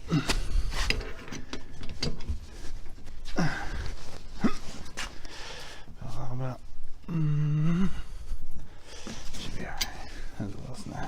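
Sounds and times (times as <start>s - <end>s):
person grunting exhales: 0.0s - 0.6s.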